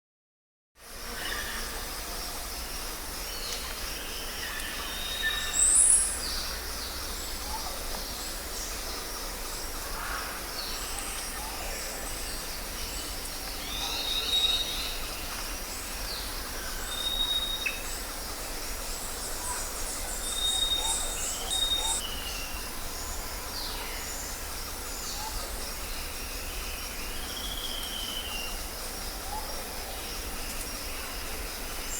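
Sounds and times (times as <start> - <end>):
birds whistling and chirping: 20.3 - 22.4.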